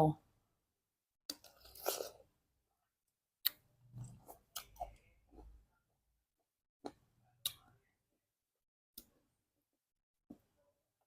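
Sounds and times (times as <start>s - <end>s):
chewing fruit: 1.3s - 2.2s.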